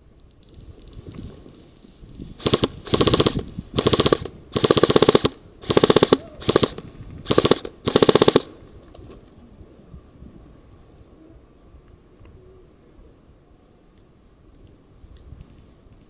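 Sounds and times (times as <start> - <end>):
airsoft rifle firing bursts: 2.4 - 8.6.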